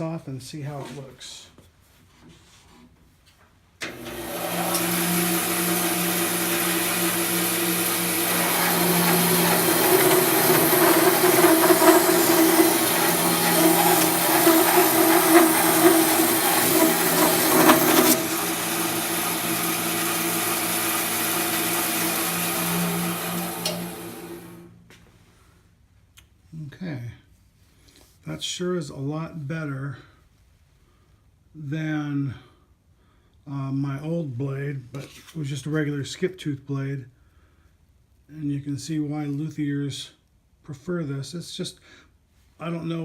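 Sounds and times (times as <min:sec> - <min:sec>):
bandsaw cutting wood: 0:03.8 - 0:24.7
bandsaw running: 0:03.8 - 0:24.7.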